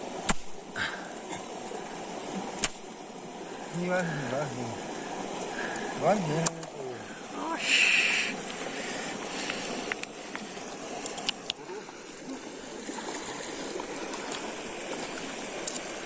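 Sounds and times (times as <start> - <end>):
river water rushing: 0.0 - 16.0
faint clicks: 9.4 - 11.6.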